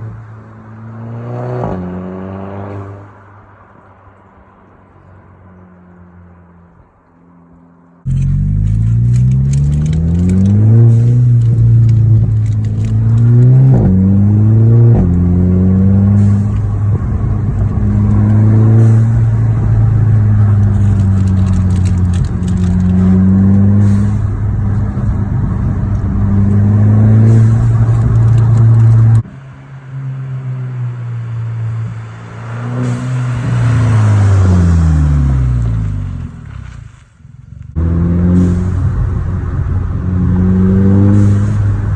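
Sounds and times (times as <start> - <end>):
car engine revving: 7.5 - 36.8, 37.6 - 41.9.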